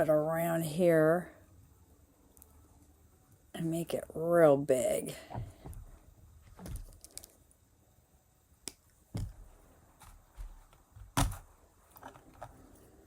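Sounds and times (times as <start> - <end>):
small clicks and taps of wire and beads: 6.6 - 7.5.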